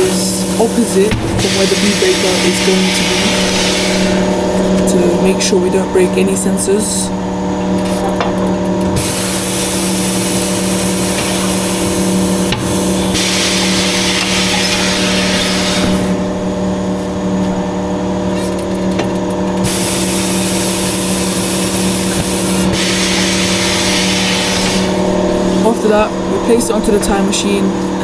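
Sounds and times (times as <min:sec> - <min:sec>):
pneumatic bead breaker hissing: 0:00.0 - 0:04.9, 0:07.2 - 0:17.0, 0:18.2 - 0:25.6
steady machine hum: 0:00.0 - 0:28.0.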